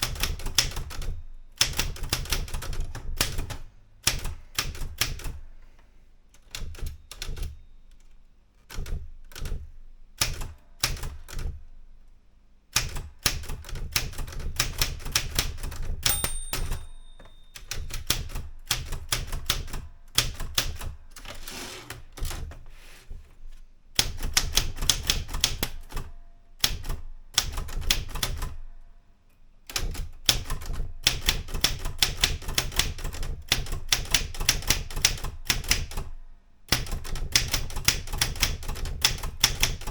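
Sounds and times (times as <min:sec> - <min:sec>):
typewriter key strikes: 0:12.8 - 0:21.3
typewriter bell ring: 0:16.0 - 0:18.4.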